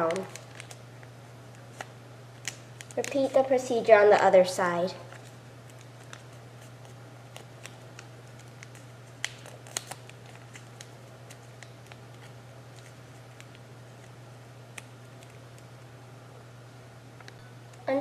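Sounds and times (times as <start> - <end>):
paper being folded and creased: 0.0 - 0.8, 1.6 - 3.6, 5.1 - 15.6
sharp paper clicks: 0.0 - 0.8, 1.6 - 3.4, 5.1 - 15.7
low steady hum: 0.0 - 18.0.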